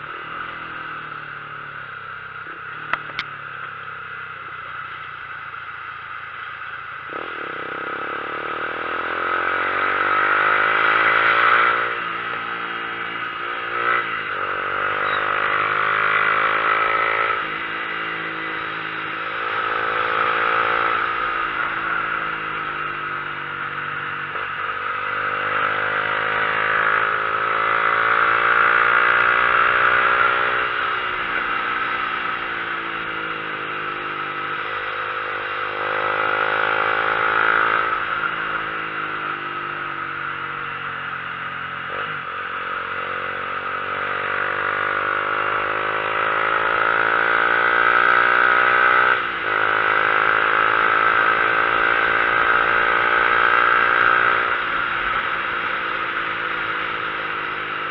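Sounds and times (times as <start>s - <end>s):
motorcycle engine revving: 0.0s - 57.9s.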